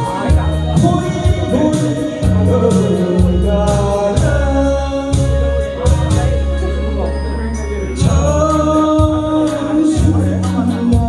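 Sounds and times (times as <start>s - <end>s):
backing music with bass and drums: 0.0s - 11.0s
person singing pop song: 0.0s - 11.0s.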